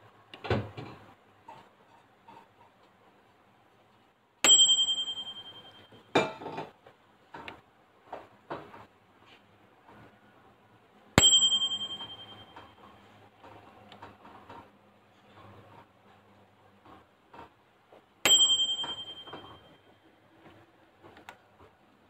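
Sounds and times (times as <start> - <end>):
microwave oven ding: 4.4 - 6.1, 11.2 - 12.9, 18.2 - 20.0.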